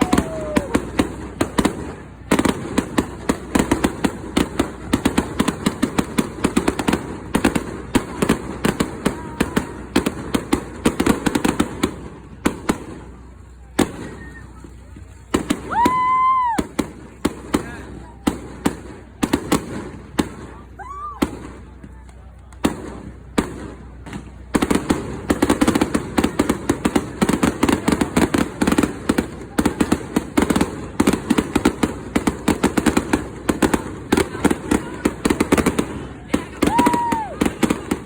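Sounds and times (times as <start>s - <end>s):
firework whistle: 0.0s - 1.0s, 13.8s - 14.9s
firework bangs: 0.0s - 38.0s.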